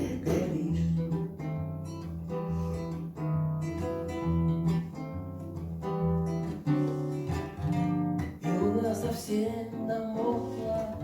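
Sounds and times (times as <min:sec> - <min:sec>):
acoustic guitar strumming chords: 0:00.0 - 0:11.0.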